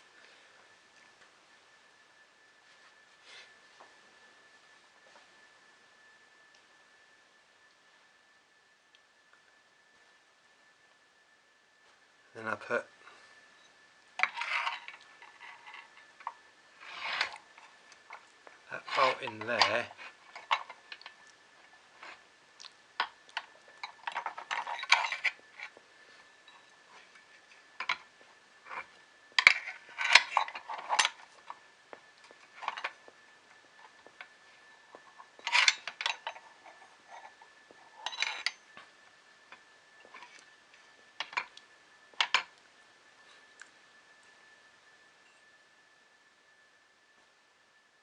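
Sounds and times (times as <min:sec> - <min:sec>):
small metal parts clinking: 0:23.8 - 0:25.7, 0:35.4 - 0:37.3, 0:37.9 - 0:38.6.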